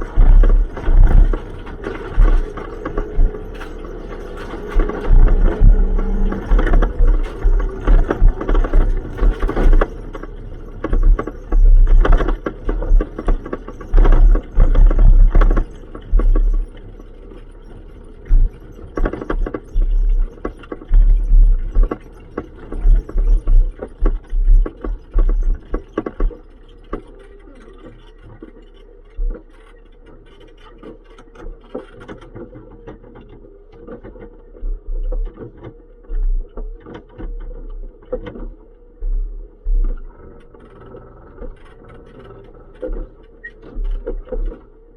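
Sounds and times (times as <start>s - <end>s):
heavy low thumps: 0.0s - 3.6s, 4.5s - 10.0s
car engine running: 0.0s - 27.2s.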